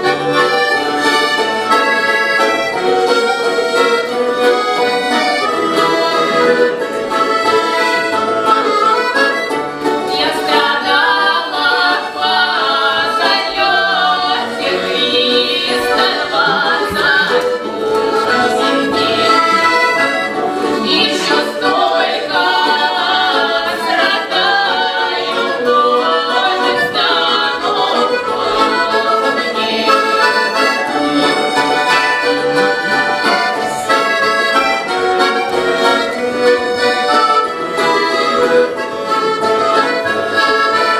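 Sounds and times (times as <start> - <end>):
accordion playing folk tune: 0.0 - 40.9
group singing: 0.0 - 40.9.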